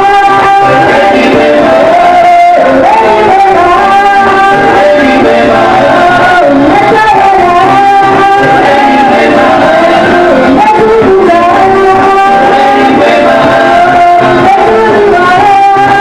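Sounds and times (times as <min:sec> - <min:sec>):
worship song with accompaniment: 0:00.0 - 0:16.0.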